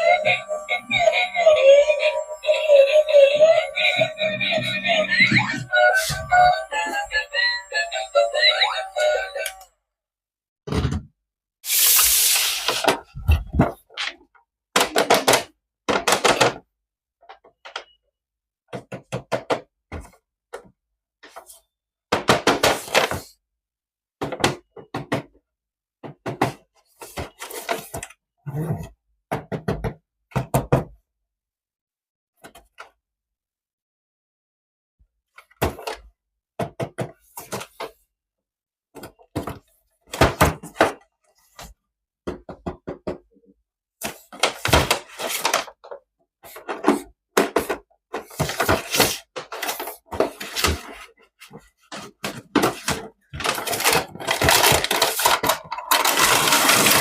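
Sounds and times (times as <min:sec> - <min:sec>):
knocks and clatter of toys: 0:12.8 - 0:18.0, 0:18.7 - 0:21.5, 0:22.1 - 0:23.3, 0:24.2 - 0:31.0, 0:35.4 - 0:38.0, 0:38.9 - 0:41.1, 0:42.2 - 0:57.0.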